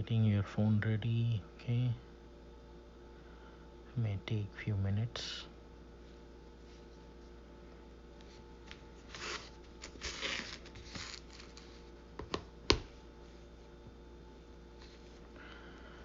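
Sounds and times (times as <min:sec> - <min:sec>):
rustling handling noise: 0:08.2 - 0:13.9.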